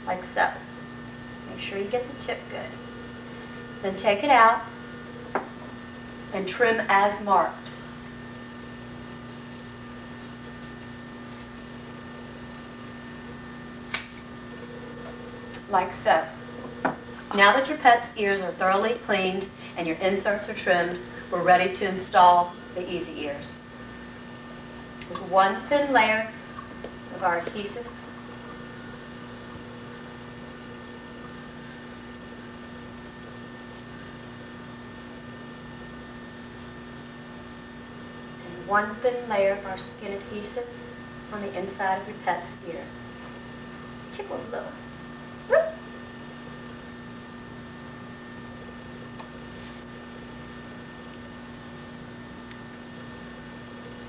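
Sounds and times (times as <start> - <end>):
electrical hum: 0.0 - 54.0.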